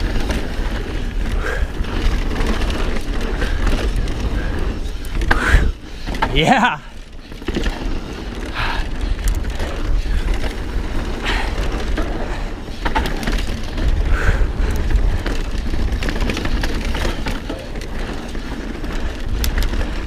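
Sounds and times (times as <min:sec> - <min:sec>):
wind on microphone: 0:00.0 - 0:06.3, 0:08.5 - 0:17.3
bike rattling: 0:00.0 - 0:20.0
bike tyres rolling on dirt: 0:00.0 - 0:20.0.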